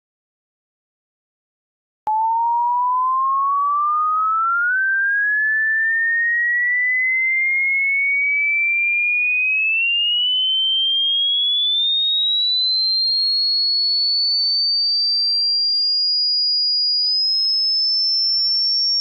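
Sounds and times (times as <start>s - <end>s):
pure tone gliding upward: 2.1s - 7.4s.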